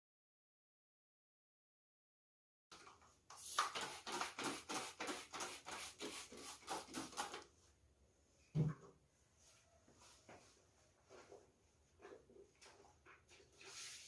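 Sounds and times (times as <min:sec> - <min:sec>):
fast rubbing strokes: 0:03.4 - 0:07.4.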